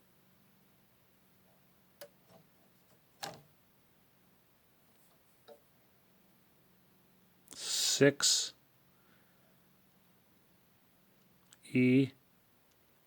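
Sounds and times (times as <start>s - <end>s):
faint steady hum: 0.0s - 13.0s
light clicks and knocks: 2.0s - 3.5s.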